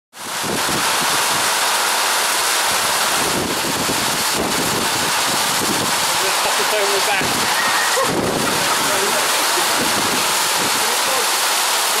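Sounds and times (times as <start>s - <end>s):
wind buffeting microphone: 0.2s - 1.6s, 2.7s - 6.3s, 7.1s - 10.9s
wind and rain hiss: 0.2s - 12.0s.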